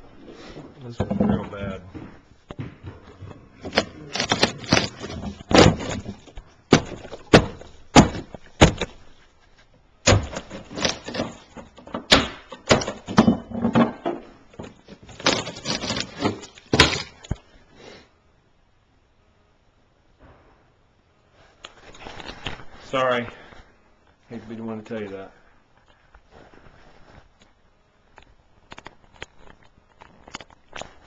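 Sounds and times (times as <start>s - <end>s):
wood clattering and scraping: 0.0s - 17.5s
sharp knocks and bangs: 1.0s - 9.0s, 10.0s - 14.8s.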